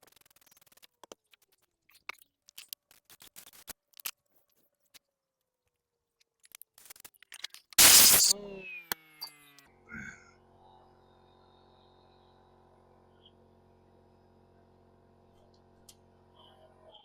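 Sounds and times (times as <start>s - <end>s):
power tool motor whine: 7.8s - 9.6s.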